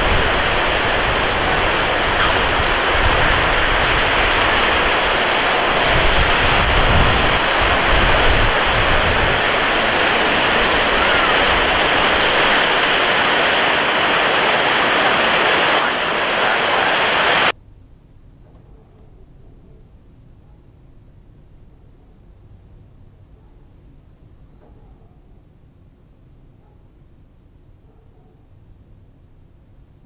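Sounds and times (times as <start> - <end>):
surf on a beach: 0.0 - 17.5
wind buffeting microphone: 0.0 - 17.5.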